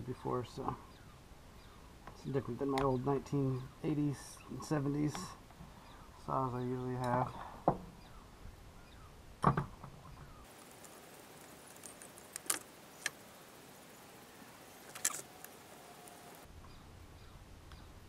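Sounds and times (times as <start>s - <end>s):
small parts clicking into place: 14.8s - 15.6s.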